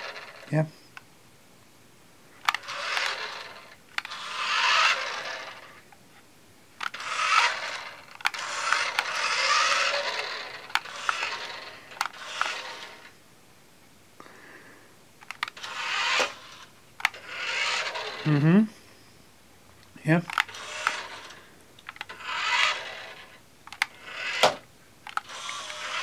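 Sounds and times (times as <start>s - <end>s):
toy car motor whirring: 0.0s - 0.6s, 2.4s - 5.8s, 6.8s - 13.1s, 15.2s - 18.5s, 20.3s - 26.0s
sharp clicks: 15.2s - 16.4s.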